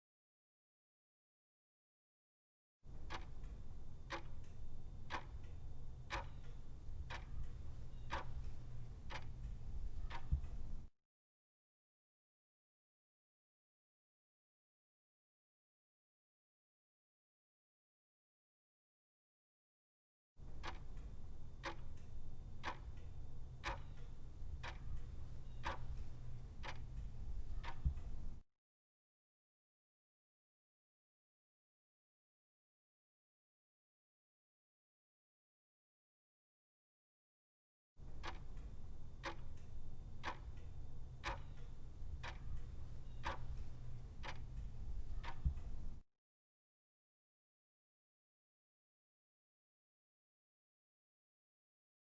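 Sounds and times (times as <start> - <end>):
clock ticking: 2.9 - 10.9, 20.4 - 28.4, 38.0 - 46.0
steady low hum: 2.9 - 10.9, 20.4 - 28.4, 38.0 - 46.0.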